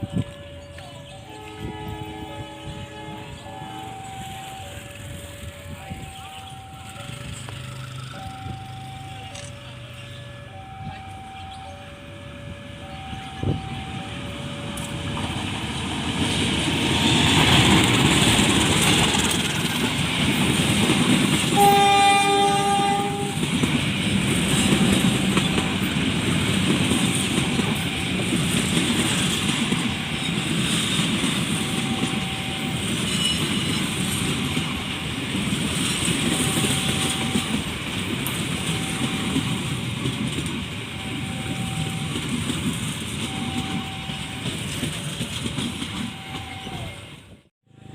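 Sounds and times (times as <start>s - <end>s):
train horn: 0.0s - 6.6s, 10.2s - 15.5s, 21.4s - 23.6s, 24.2s - 33.7s, 35.9s - 37.7s, 38.5s - 39.8s
train rumble and wheel clatter: 0.0s - 47.9s.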